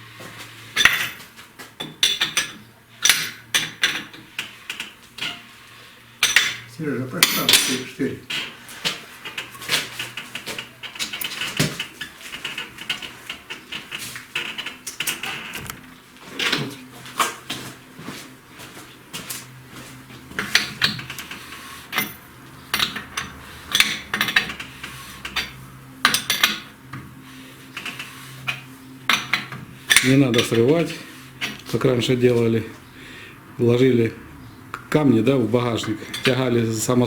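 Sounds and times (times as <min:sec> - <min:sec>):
hand tools clinking on metal: 0:01.8 - 0:05.4, 0:06.2 - 0:11.8, 0:21.9 - 0:26.7, 0:27.8 - 0:32.3, 0:35.6 - 0:37.0.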